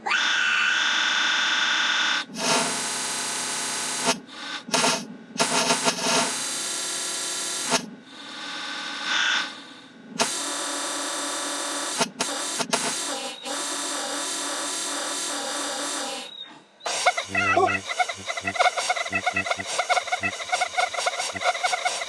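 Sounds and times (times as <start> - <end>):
slowed smeared soundtrack tones: 17.2 - 22.0.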